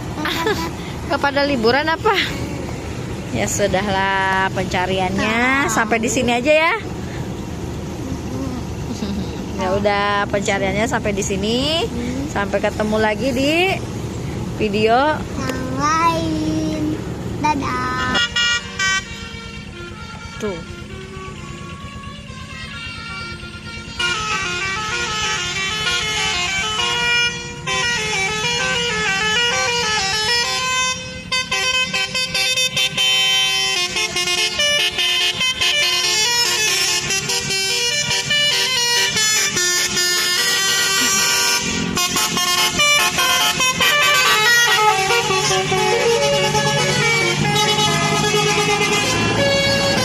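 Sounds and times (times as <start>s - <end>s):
low engine hum: 0.0s - 50.0s
musical air horn playing a tune: 18.1s - 50.0s.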